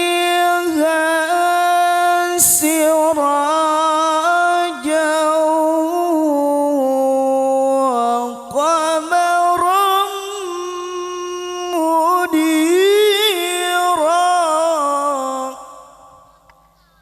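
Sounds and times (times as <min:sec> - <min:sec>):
person chanting melodiously: 0:00.0 - 0:17.0.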